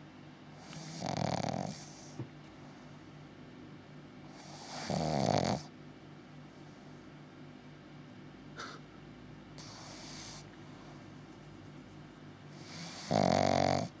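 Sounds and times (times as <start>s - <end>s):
puppy snoring: 0.5s - 2.2s, 4.3s - 5.7s, 8.6s - 8.8s, 9.6s - 11.0s, 12.5s - 14.0s
puppy breathy hiss: 4.3s - 5.1s, 8.6s - 8.9s, 9.6s - 11.2s, 12.5s - 13.8s.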